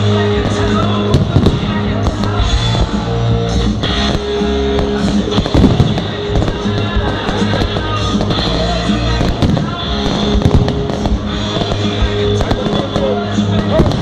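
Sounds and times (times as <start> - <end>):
firework bangs and crackles: 0.0 - 14.0
loud music: 0.0 - 14.0.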